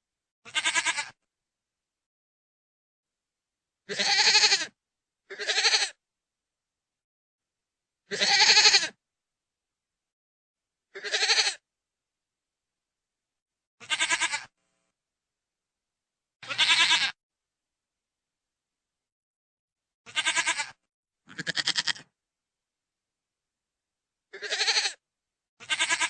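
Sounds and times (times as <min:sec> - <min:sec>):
goat bleating: 0:00.5 - 0:01.2, 0:03.9 - 0:04.7, 0:05.3 - 0:06.0, 0:08.1 - 0:09.0, 0:11.0 - 0:11.6, 0:13.8 - 0:14.5, 0:16.4 - 0:17.2, 0:20.0 - 0:22.1, 0:24.3 - 0:25.0, 0:25.6 - 0:26.0.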